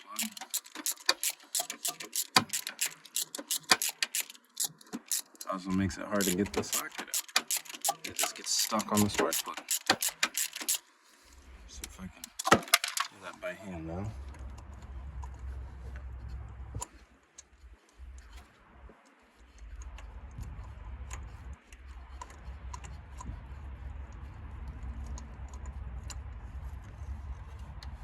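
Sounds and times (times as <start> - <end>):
small tool parts clicking: 0.0 - 10.8, 12.2 - 13.2.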